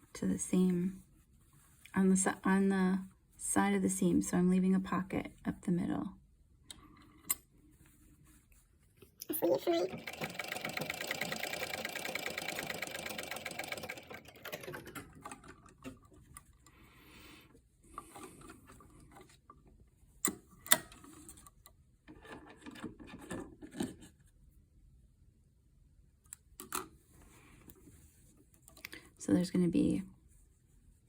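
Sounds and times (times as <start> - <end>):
quiet rustling: 0.0 - 4.1, 6.7 - 9.2, 26.9 - 29.1
sewing machine stitching: 9.5 - 16.0.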